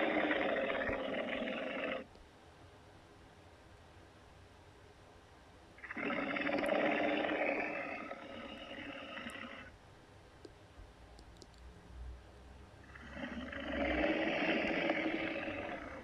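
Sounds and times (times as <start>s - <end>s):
harsh rasping monster roar: 0.0s - 2.0s, 5.8s - 9.7s, 12.9s - 16.0s
faint low rumble: 0.0s - 16.0s.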